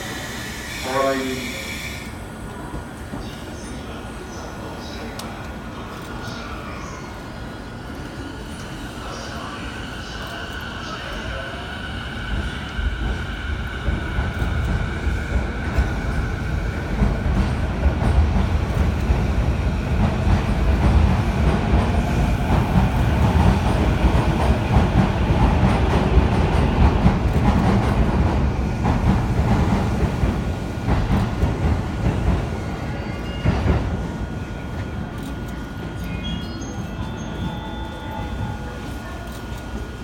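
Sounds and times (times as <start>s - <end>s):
electric train pulling out: 0.0s - 2.5s.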